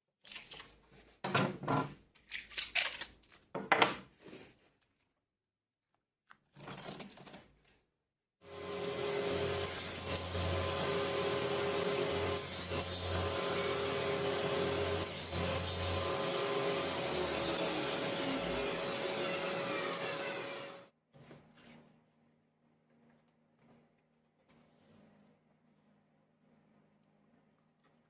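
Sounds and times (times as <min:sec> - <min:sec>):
chainsaw cutting log: 0:08.5 - 0:20.8.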